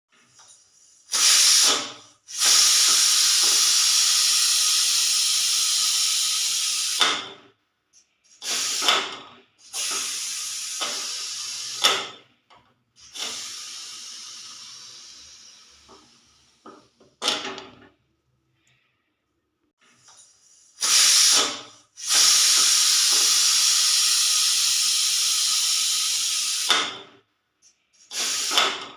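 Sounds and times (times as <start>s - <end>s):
pressure cooker whistle hisses: 0.7s - 7.2s, 8.3s - 9.0s, 9.6s - 12.0s, 13.0s - 15.8s, 20.5s - 26.9s, 28.0s - 28.9s.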